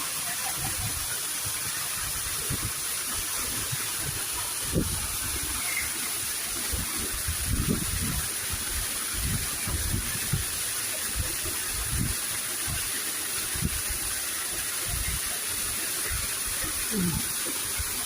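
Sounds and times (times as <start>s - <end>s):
waterfall roar: 0.0s - 18.0s.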